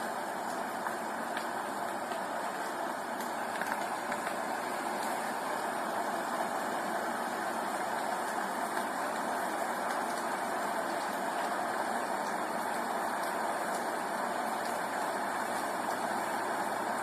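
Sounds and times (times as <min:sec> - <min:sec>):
raindrops ticking: 0:00.0 - 0:17.0
steady rain hiss: 0:00.0 - 0:17.0.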